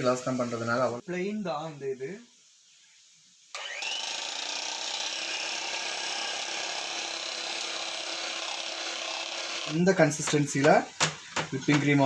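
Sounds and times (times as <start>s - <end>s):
electric hand mixer whipping cream: 3.6s - 9.8s.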